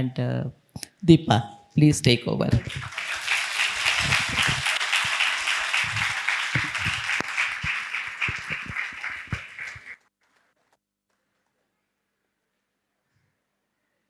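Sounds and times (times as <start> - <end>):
audience applauding: 2.6 - 10.0.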